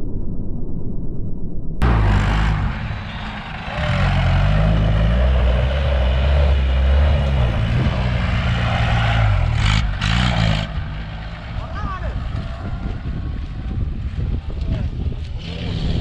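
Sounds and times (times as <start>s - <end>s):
low rumble: 0.0s - 16.0s
jeep engine revving: 1.8s - 16.0s.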